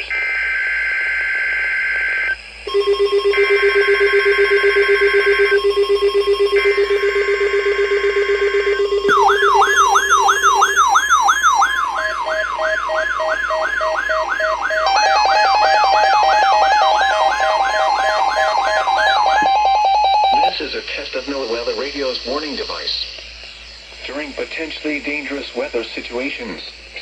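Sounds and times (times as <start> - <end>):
whooping siren-like alarm tone: 0.0 - 20.6
steady high tone: 0.0 - 22.9
screeching digital data bursts: 0.0 - 26.3
pulsing low buzz: 2.3 - 22.8
beeping tone: 2.7 - 20.6.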